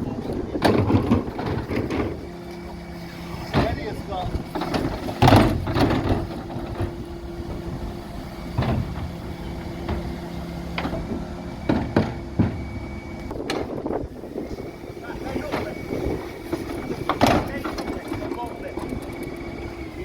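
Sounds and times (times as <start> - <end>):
refuse truck humming: 0.0 - 20.0
sharp knocks and clatters: 4.5 - 7.0.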